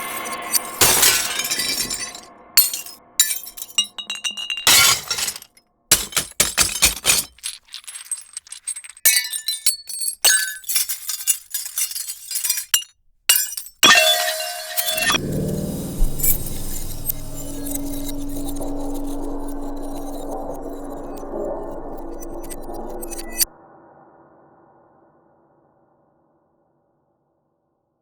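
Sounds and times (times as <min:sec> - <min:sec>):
glass shards clinking: 0:00.1 - 0:15.2
glass smashing: 0:00.1 - 0:15.2.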